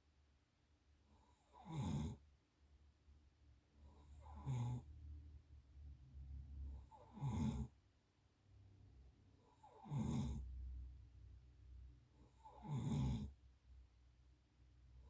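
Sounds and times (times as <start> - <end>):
quiet breathing: 3.7 - 5.3.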